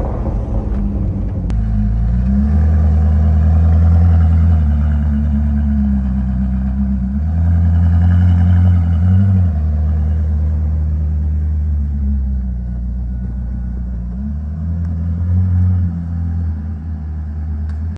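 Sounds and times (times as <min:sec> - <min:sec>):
car engine rumbling: 0:00.0 - 0:17.9.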